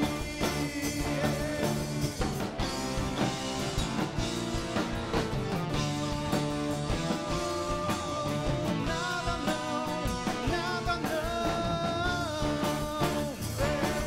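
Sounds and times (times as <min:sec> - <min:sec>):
rock band playing: 0:00.0 - 0:14.0.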